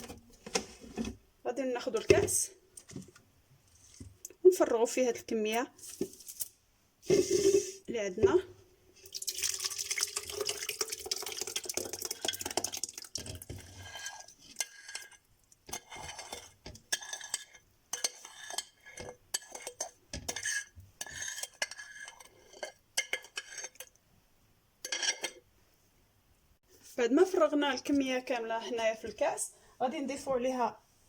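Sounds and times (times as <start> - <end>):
spoon scraping and knocking a bowl: 7.1 - 8.4, 13.2 - 23.9, 24.8 - 25.5.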